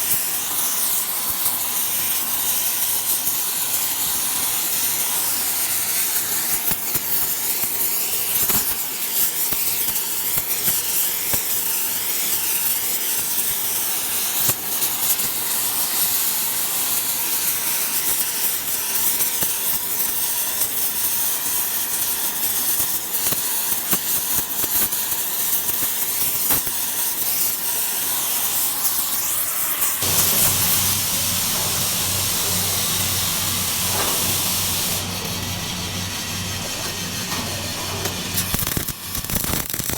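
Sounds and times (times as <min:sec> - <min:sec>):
welding arc crackling: 0:23.2 - 0:39.9
steady hiss with low hum: 0:30.0 - 0:37.9.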